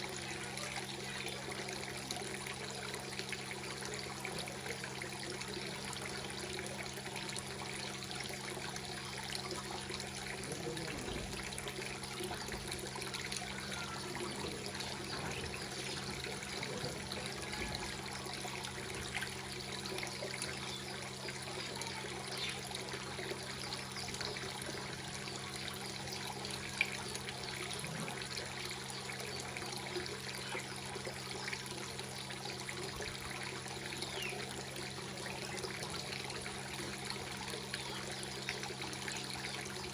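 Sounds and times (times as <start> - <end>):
water trickling into pond: 0.0 - 39.9.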